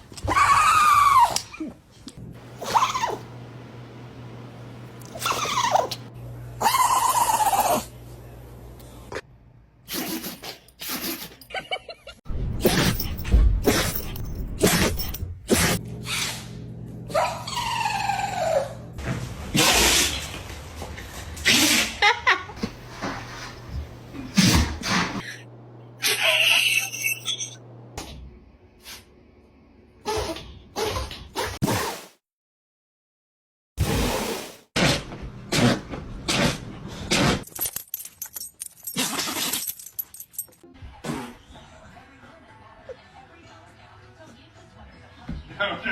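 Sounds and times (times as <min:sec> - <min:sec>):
dog sneezing: 0:09.9 - 0:11.4.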